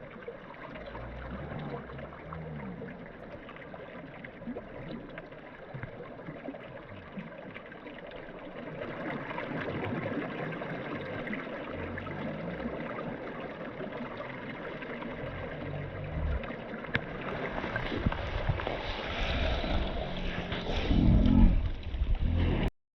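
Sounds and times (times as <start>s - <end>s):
flowing water rushing: 0.0s - 22.2s
low rumbling: 15.0s - 22.7s.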